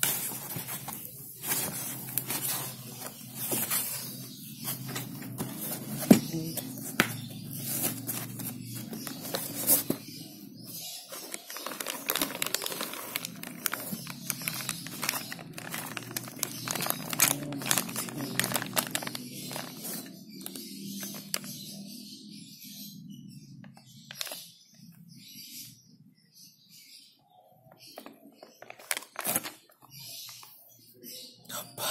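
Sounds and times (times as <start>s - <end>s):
plastic packaging crinkling: 0.0s - 10.0s, 11.0s - 21.5s, 28.0s - 29.8s.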